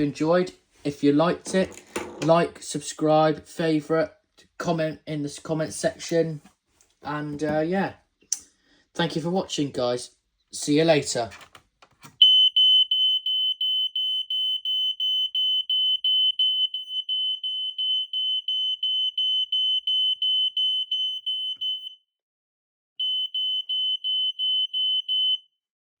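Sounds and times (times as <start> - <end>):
smoke alarm beeping: 12.2 - 22.0, 23.0 - 25.5.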